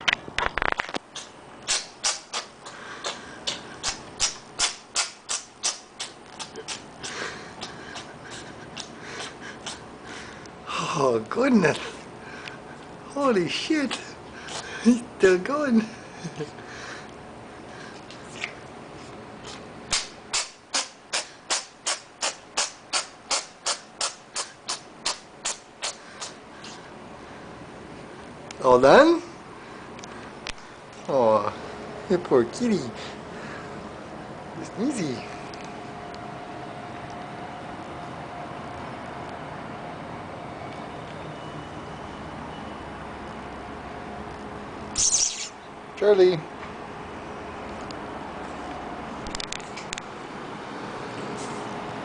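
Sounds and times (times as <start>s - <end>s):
cat sneezing: 1.2s - 9.9s, 13.9s - 14.8s, 19.5s - 26.8s, 44.9s - 45.6s.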